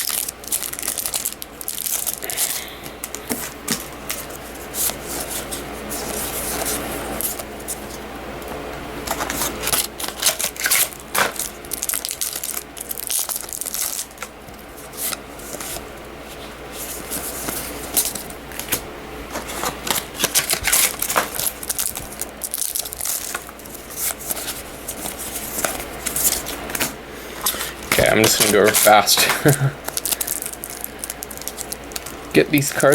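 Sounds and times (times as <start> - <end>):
foil wrappers crinkling: 0.0 - 8.1, 9.0 - 32.9.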